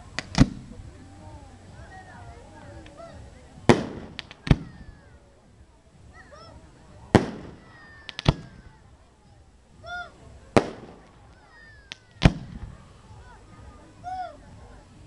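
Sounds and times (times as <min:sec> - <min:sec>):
fireworks bangs: 0:03.6 - 0:05.1, 0:07.0 - 0:08.8, 0:10.5 - 0:12.8
small cracks: 0:04.2 - 0:04.5.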